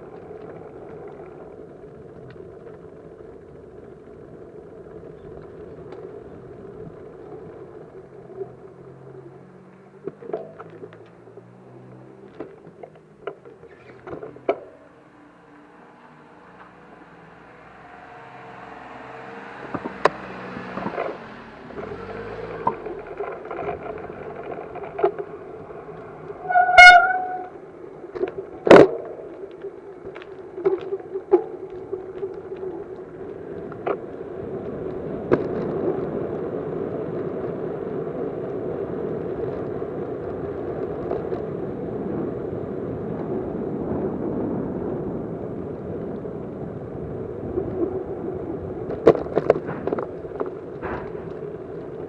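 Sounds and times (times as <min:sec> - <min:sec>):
short horn toot: 0:26.4 - 0:27.5.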